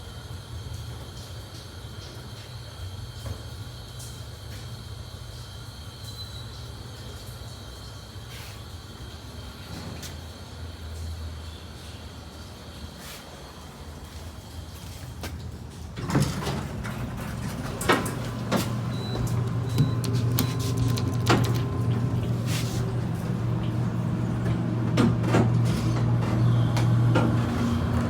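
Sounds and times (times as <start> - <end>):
doors and machinery clicking: 16.0 - 28.0
elevator hum: 16.0 - 28.0.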